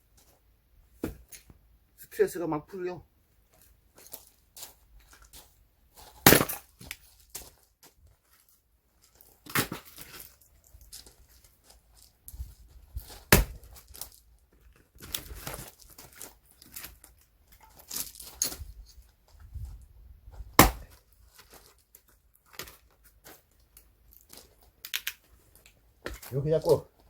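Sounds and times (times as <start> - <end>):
axe striking firewood: 1.0 - 1.3, 6.2 - 7.0, 9.4 - 10.1, 13.1 - 13.8, 20.5 - 21.0.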